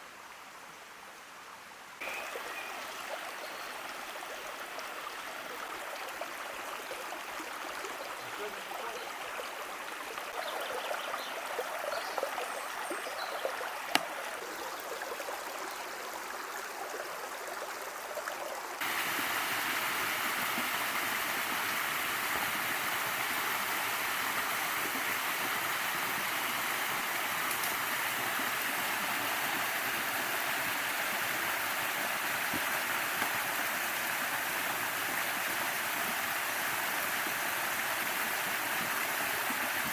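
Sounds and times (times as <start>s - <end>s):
rushing mountain river: 2.0s - 39.9s.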